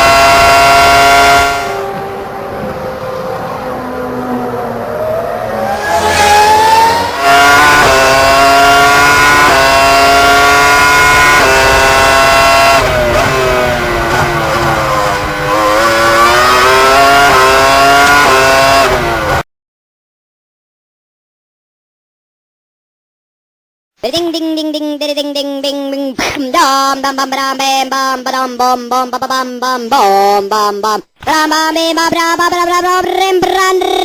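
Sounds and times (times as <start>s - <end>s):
racing car engine revving: 0.0s - 19.4s.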